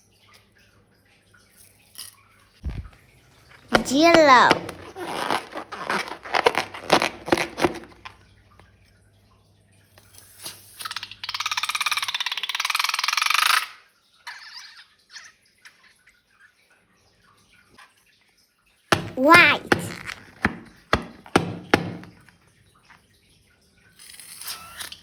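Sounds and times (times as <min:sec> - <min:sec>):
slime squelching: 0:02.7 - 0:08.2, 0:18.9 - 0:22.3.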